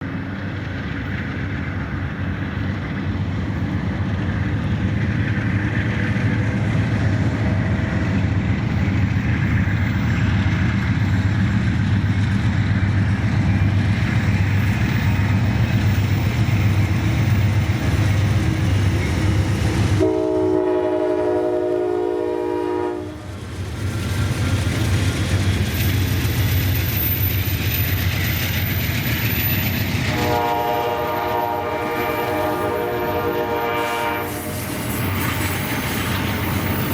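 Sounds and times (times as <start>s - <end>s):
diesel locomotives rumbling: 0.0s - 36.9s
train horn chord: 20.0s - 23.2s, 30.1s - 34.5s.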